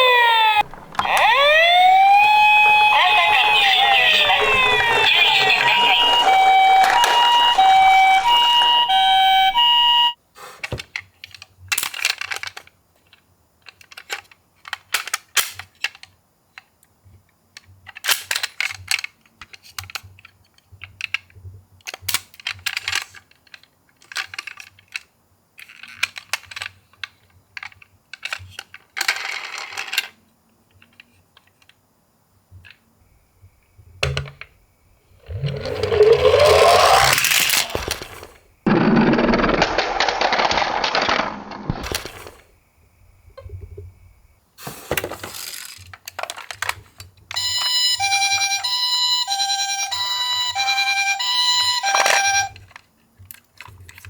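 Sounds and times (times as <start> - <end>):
toy electronic two-tone siren: 0.0 - 10.2, 35.2 - 38.2, 47.4 - 52.6
plastic toy clicks and rattles: 10.6 - 16.7, 17.5 - 31.8, 35.2 - 42.5, 45.0 - 47.1, 51.7 - 54.0.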